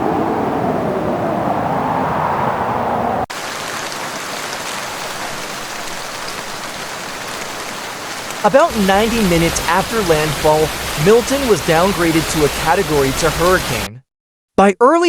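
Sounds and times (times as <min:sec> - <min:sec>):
heavy rain hiss: 0:03.3 - 0:13.9.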